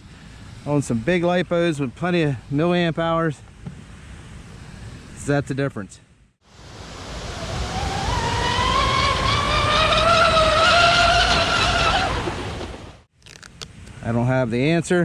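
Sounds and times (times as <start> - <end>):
wind and water spray: 0.0 - 15.0
electric boat motor whining: 6.9 - 13.0.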